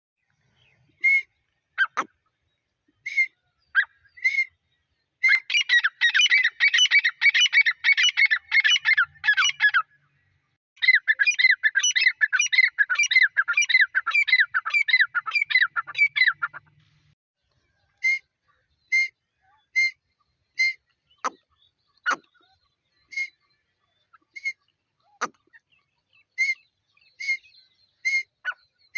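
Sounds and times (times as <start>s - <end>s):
francolin calling: 10.8s - 16.6s.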